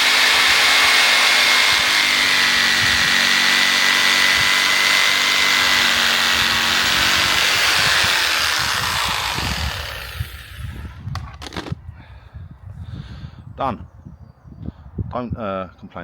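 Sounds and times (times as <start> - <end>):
electric saw cutting wood: 0.0 - 11.7.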